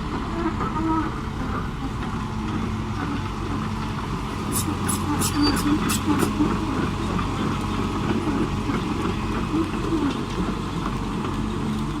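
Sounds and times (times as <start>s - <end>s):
excavator diesel engine running: 0.0s - 12.0s.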